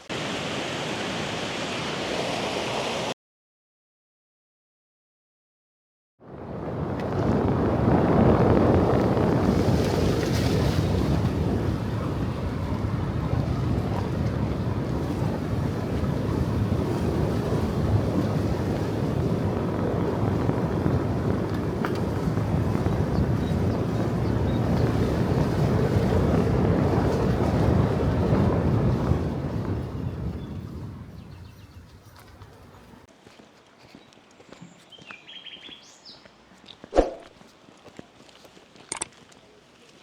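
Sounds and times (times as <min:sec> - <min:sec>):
rushing stream water: 0:00.0 - 0:03.2.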